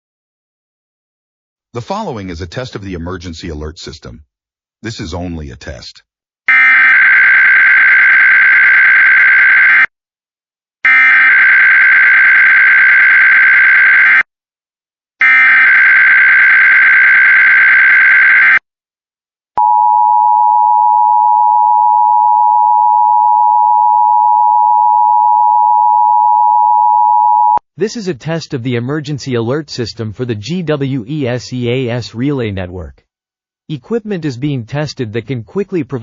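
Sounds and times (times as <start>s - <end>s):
steady attention tone: 19.6s - 27.6s.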